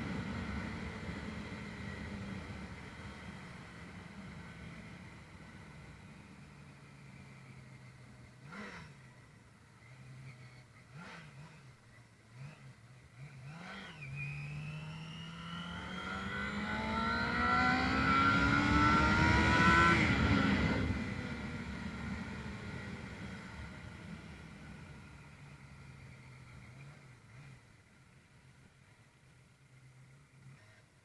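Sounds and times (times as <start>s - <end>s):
motorcycle engine revving: 7.6s - 28.3s.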